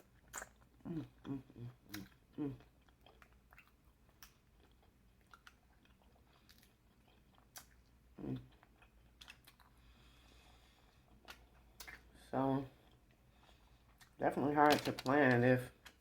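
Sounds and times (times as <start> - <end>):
person chewing food: 0.0 - 14.2
wet mouth clicks: 0.3 - 4.4.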